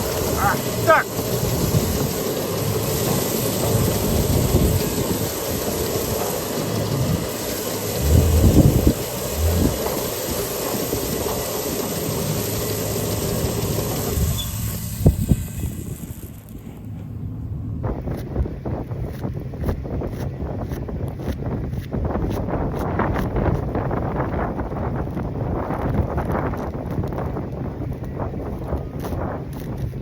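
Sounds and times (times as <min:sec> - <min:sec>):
truck engine rumbling under load: 0:00.0 - 0:20.4.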